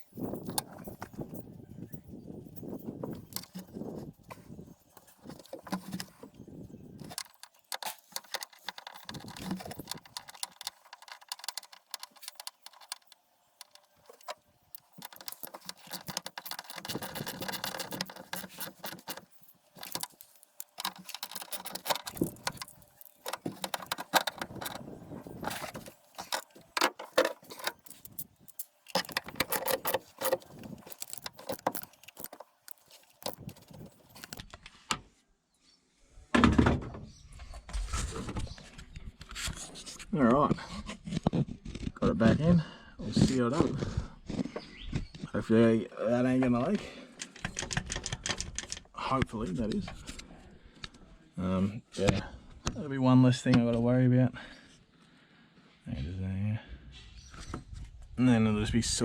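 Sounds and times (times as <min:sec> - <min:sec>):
metal tools and bolts clinking: 0:00.0 - 0:34.4
knocks and clicks: 0:07.0 - 0:34.4.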